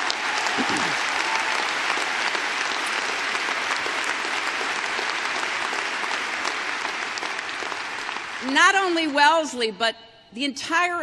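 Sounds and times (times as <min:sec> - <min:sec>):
audience applauding: 0:00.0 - 0:09.3.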